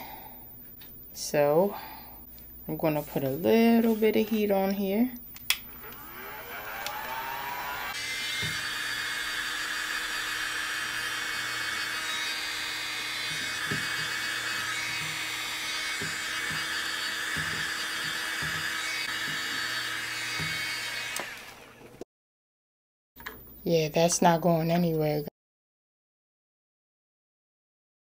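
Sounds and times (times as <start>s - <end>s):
hot-air blower running: 5.5s - 21.9s.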